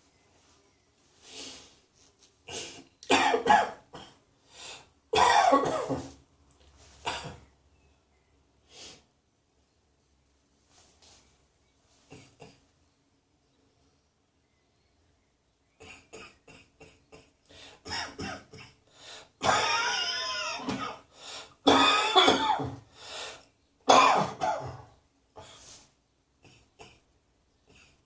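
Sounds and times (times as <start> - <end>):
person coughing: 2.5 - 4.2, 5.2 - 6.2, 7.0 - 7.4, 15.8 - 18.8, 19.4 - 21.1, 21.7 - 22.8, 23.9 - 24.9.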